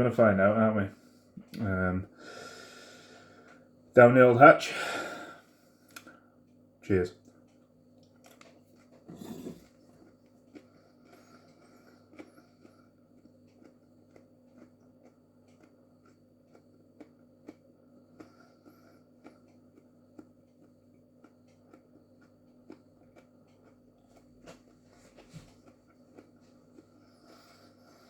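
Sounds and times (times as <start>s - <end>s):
steady low hum: 0.0s - 28.0s
faint chewing mouth clicks: 9.8s - 28.0s.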